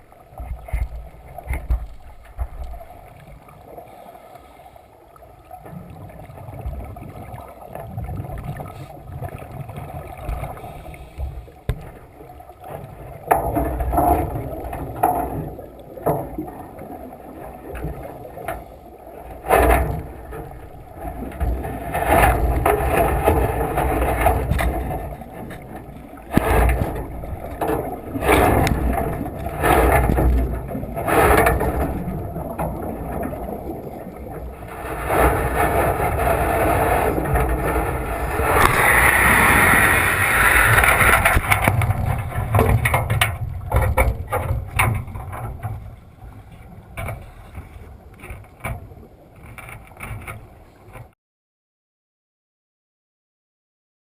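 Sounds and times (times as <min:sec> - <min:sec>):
water rushing and splashing: 0:00.0 - 0:51.0.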